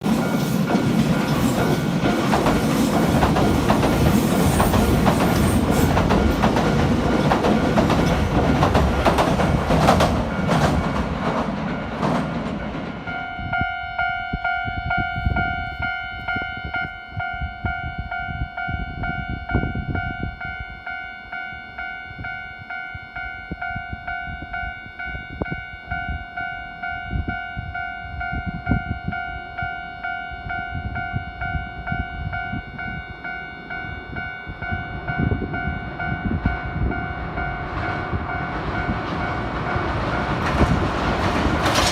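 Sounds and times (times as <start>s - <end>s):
level crossing warning bell: 0.0s - 9.2s, 10.2s - 40.7s
train wheels clattering over rails: 0.0s - 13.1s, 37.3s - 41.9s.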